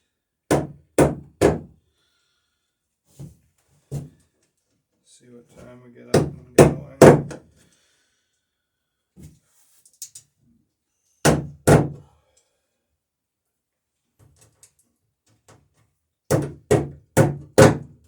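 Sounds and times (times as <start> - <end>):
hammer striking wood: 0.5 - 1.7, 6.2 - 7.4, 11.3 - 12.0, 16.3 - 17.9.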